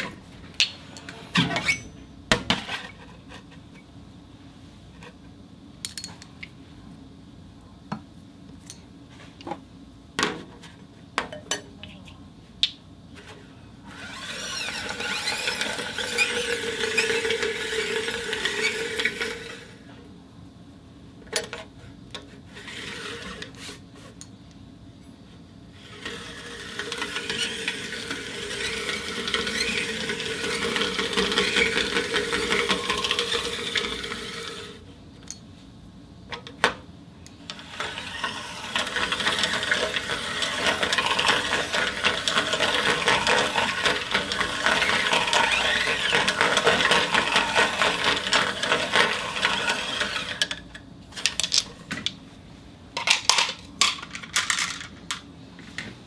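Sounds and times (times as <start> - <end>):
glass marbles rolling and rattling: 26.0 - 34.7, 37.8 - 50.5.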